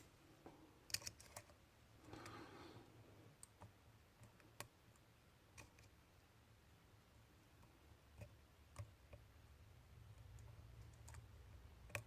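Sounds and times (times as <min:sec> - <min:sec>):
small clicks and taps: 0:07.6 - 0:09.3, 0:10.1 - 0:12.0.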